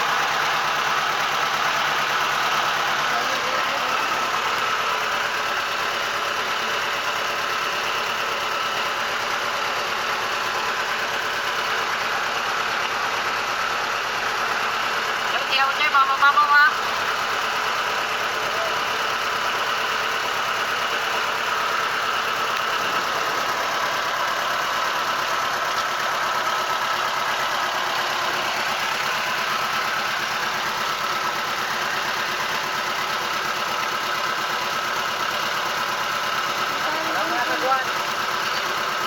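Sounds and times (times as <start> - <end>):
boat engine droning: 15.3 - 25.0.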